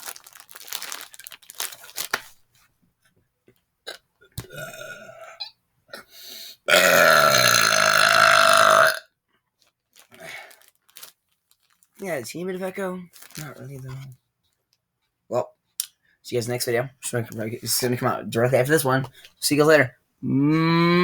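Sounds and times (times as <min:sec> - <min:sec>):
man burping loudly: 0:03.9 - 0:05.4, 0:06.7 - 0:09.0.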